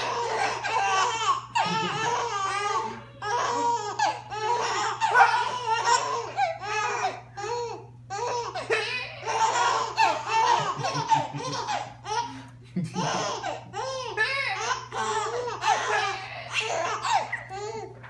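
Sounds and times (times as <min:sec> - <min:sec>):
baby laughing: 0:00.0 - 0:18.0.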